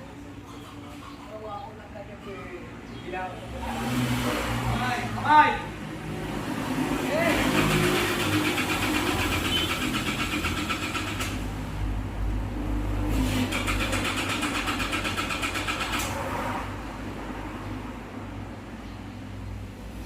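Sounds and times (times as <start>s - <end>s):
engine cranked by starter motor: 7.2s - 11.8s, 12.9s - 16.5s.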